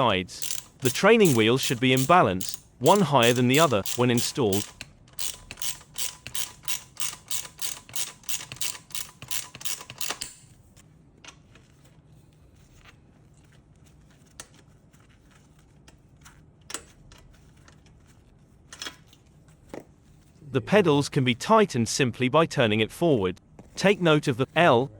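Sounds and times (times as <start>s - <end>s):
ratchet wrench clicking: 0.4s - 10.5s.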